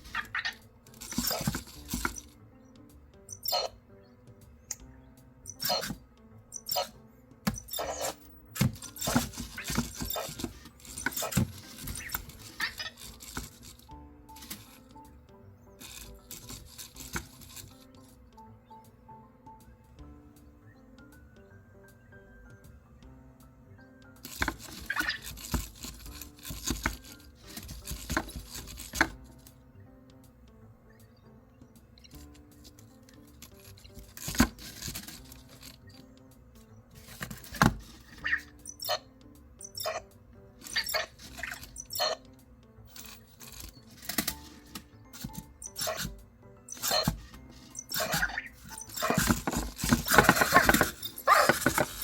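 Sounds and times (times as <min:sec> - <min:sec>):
small motors whirring and clicking: 0:05.5 - 0:15.1, 0:15.8 - 0:18.2, 0:24.2 - 0:29.5, 0:32.0 - 0:52.0
small plastic robot clattering: 0:42.9 - 0:46.1, 0:47.9 - 0:52.0.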